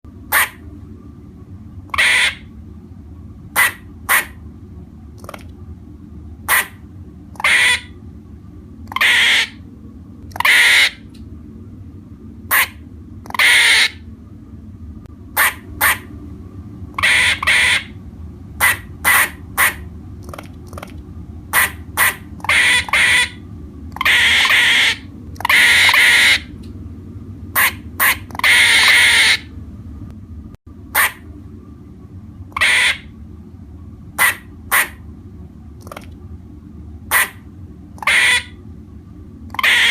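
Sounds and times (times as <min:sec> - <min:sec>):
squirrel chirping calls: 0:00.3 - 0:00.6, 0:02.0 - 0:02.4, 0:03.6 - 0:04.3, 0:07.4 - 0:07.9, 0:08.9 - 0:09.6, 0:10.3 - 0:11.0, 0:12.5 - 0:14.0, 0:15.4 - 0:16.0, 0:17.0 - 0:17.9, 0:18.6 - 0:19.8, 0:21.6 - 0:23.4, 0:24.0 - 0:26.5, 0:27.6 - 0:29.4, 0:32.6 - 0:33.1, 0:38.0 - 0:38.6, 0:39.5 - 0:39.9.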